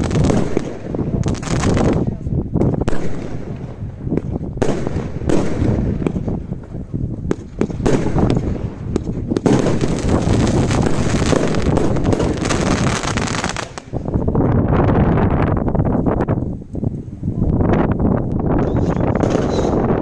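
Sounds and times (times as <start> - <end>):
fireworks bangs: 0.0 - 14.2, 18.6 - 20.0
fireworks crackling: 0.0 - 14.4, 18.3 - 20.0.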